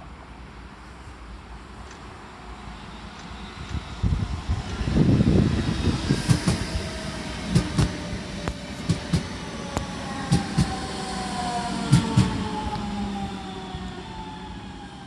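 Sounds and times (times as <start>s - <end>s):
train rumble: 0.0s - 15.0s
train wheels clacking over rail joints: 6.1s - 10.9s, 11.8s - 12.9s.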